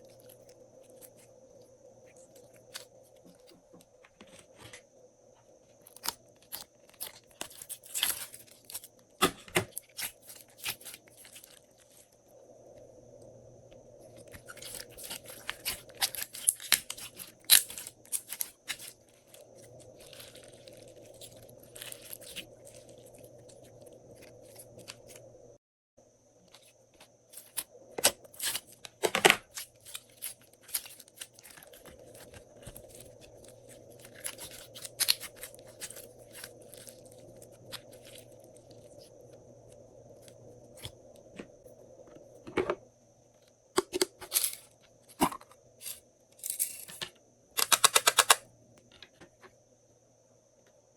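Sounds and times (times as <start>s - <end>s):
faint steady hum: 0.0s - 50.9s
slime squishing with pops and crackles: 5.8s - 12.2s, 14.0s - 25.3s, 26.6s - 41.4s.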